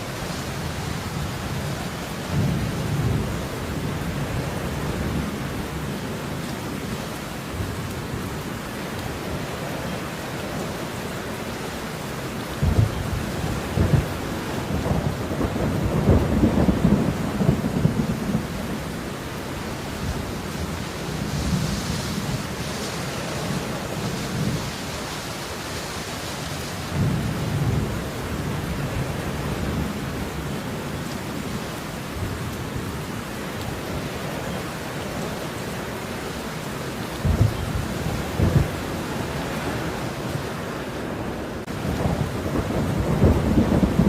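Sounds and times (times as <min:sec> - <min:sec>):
rolling thunder rumbles: 0:00.0 - 0:06.9, 0:12.5 - 0:25.0, 0:26.6 - 0:31.1, 0:37.1 - 0:40.4, 0:41.0 - 0:44.0
heavy rain: 0:00.0 - 0:44.0.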